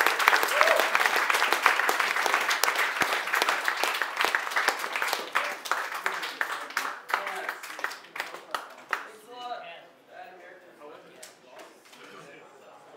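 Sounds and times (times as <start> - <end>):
audience applauding: 0.0 - 9.1.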